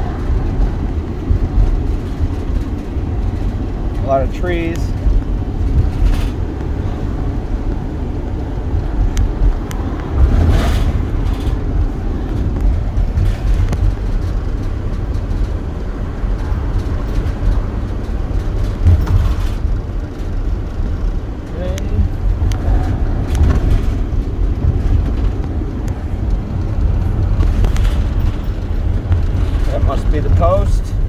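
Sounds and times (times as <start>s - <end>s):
vehicle road noise rumble: 0.0s - 31.0s.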